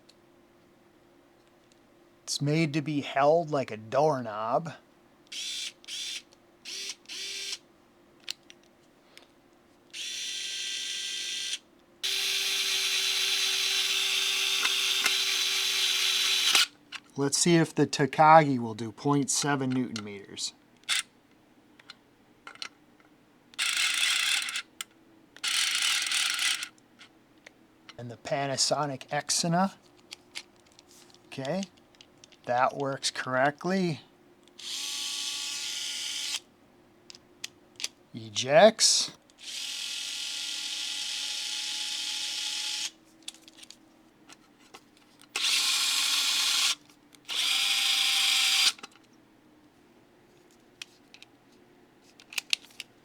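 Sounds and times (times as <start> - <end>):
faint motor hum: 0.0 - 53.0
electric screwdriver motor whine: 5.3 - 7.6, 10.0 - 16.7, 34.6 - 36.4, 39.4 - 42.9, 45.4 - 48.8
screwdriver clutch ratcheting: 45.4 - 48.9.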